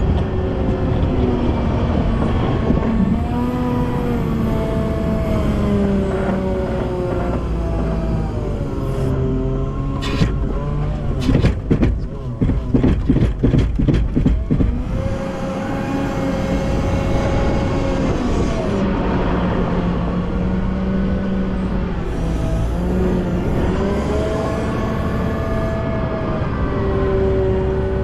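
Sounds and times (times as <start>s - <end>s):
diesel engine under load: 0.0s - 28.0s
rapid knocks and clatter: 11.2s - 15.2s.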